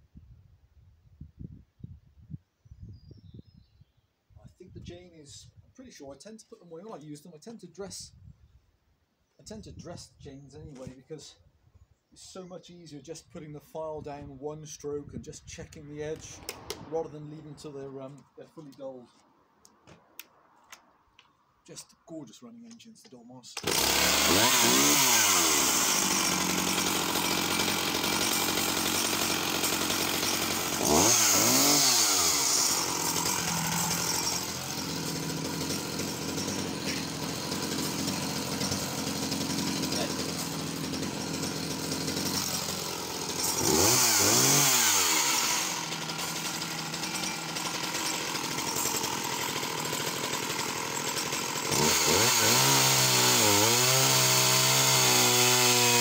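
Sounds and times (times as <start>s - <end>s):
chainsaw revving: 23.6s - 56.0s.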